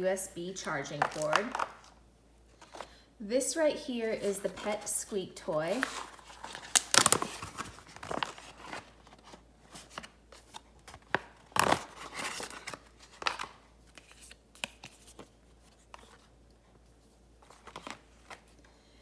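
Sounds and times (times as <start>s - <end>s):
dog toy packaging rustling: 4.2s - 10.0s.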